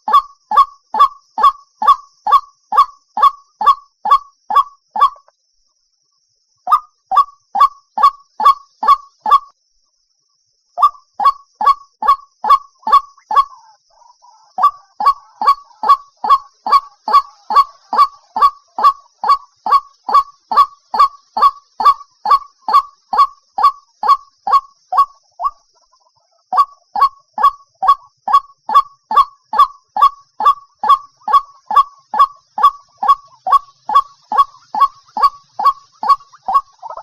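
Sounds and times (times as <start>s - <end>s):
waterhen calling harsh notes: 10.8s - 25.6s, 26.6s - 37.0s.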